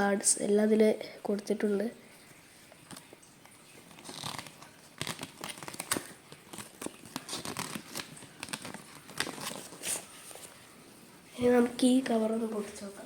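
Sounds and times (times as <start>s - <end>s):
packaging crinkling: 2.9s - 10.6s.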